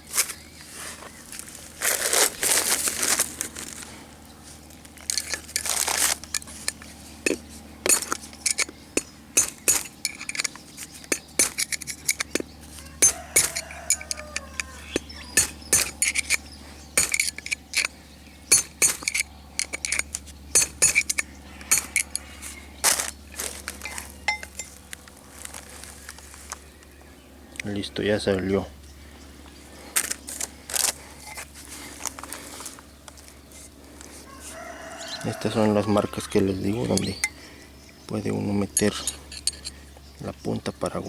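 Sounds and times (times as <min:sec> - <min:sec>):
hammer tapping metal punch: 0:07.3 - 0:16.4, 0:17.0 - 0:22.2.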